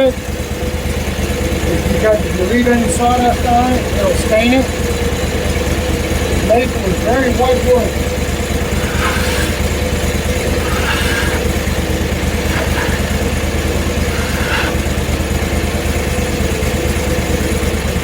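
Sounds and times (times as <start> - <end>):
gas engine idling: 0.0 - 18.0
sawdust scraping: 8.5 - 15.4.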